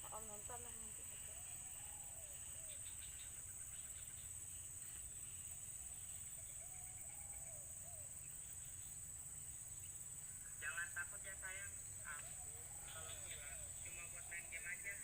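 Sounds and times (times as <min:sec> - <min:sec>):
steady high-pitched hiss: 0:00.0 - 0:15.0
distant drawn-out calls: 0:10.2 - 0:15.0.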